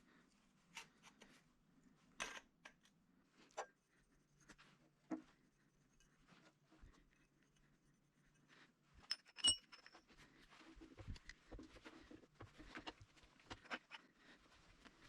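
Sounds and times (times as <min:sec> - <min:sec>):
small parts clicking and knocking: 0:09.0 - 0:10.0
metal object clinking: 0:09.1 - 0:10.0.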